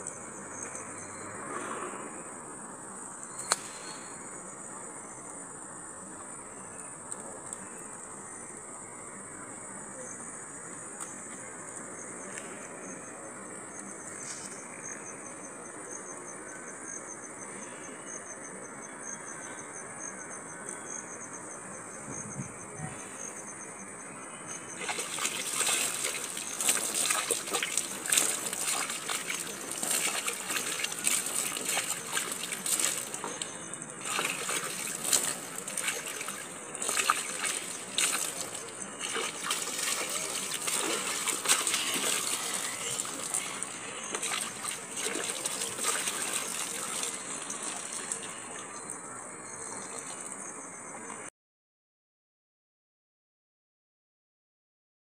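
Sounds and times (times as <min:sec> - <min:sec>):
water splashing: 0:24.6 - 0:48.9.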